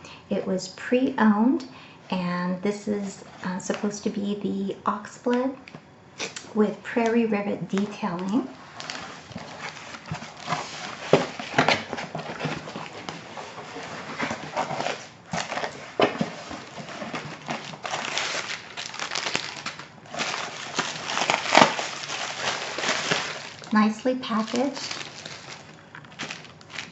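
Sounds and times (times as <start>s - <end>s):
paper and plastic crinkling: 7.7s - 26.9s.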